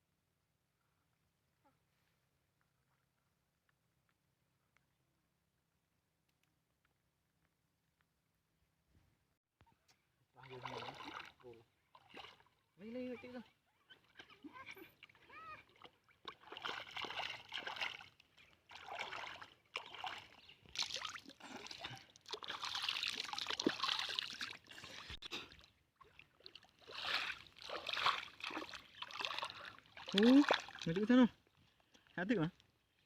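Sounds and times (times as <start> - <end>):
water splashing and pouring: 10.4 - 11.4, 15.1 - 31.1.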